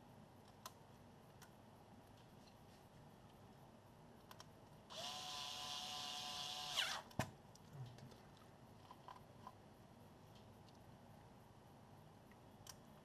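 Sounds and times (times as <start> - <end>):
electric screwdriver motor spinning: 4.9 - 7.1.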